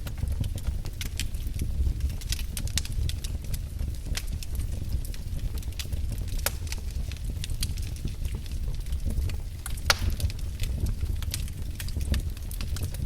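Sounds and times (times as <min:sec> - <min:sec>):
steady low rumble: 0:00.0 - 0:13.0
wood fire crackling: 0:00.0 - 0:13.0.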